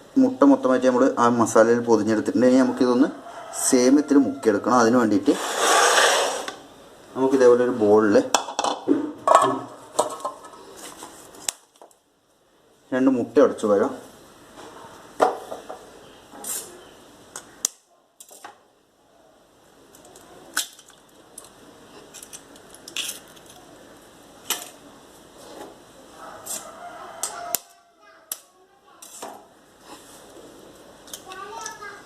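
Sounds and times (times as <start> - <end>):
eggs cracking against bowl: 19.9 - 23.6.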